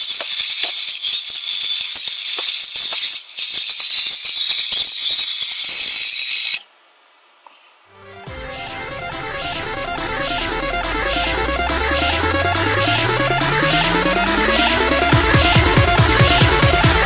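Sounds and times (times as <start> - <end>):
music: 7.9 - 17.0
computer hardware whine: 8.0 - 17.0.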